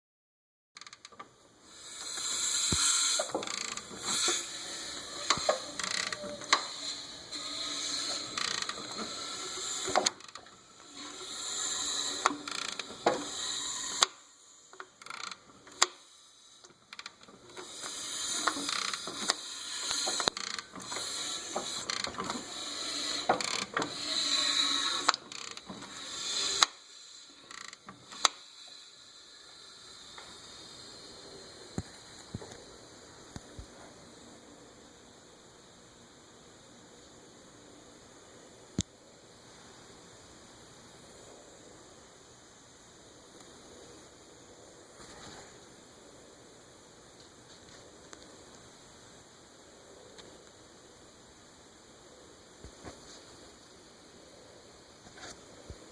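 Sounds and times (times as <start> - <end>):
sharp clicks: 2.0 - 6.9, 12.0 - 16.0, 24.8 - 26.8.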